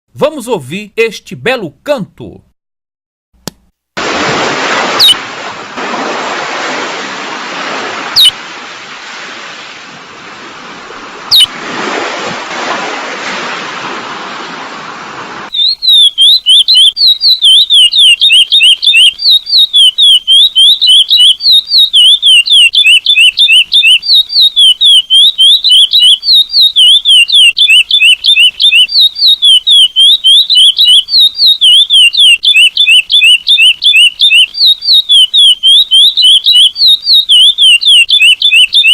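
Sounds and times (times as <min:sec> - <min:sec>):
ocean waves washing: 0:04.0 - 0:15.6
bird song of whistled notes: 0:08.2 - 0:08.4, 0:11.3 - 0:11.5, 0:15.5 - 0:38.9.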